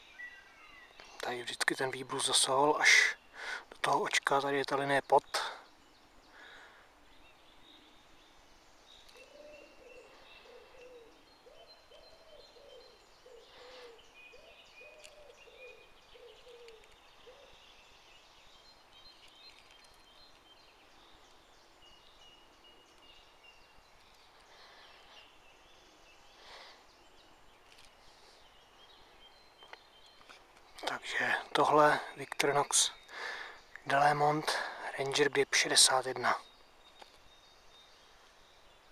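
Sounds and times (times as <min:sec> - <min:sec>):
low bird coos: 0:09.0 - 0:17.9.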